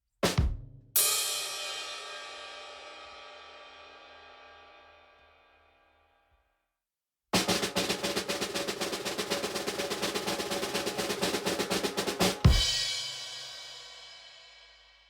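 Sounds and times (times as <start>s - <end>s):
loud accented drum hit: 7.4s - 13.7s
snare drum roll: 7.4s - 14.1s.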